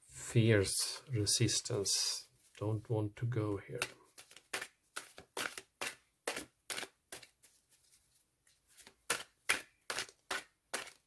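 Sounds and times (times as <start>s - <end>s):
cards being shuffled: 3.8s - 11.0s.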